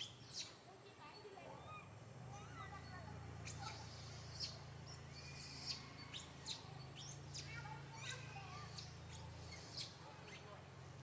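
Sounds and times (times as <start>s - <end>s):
baby monkey squealing: 3.5s - 7.4s, 8.2s - 9.9s.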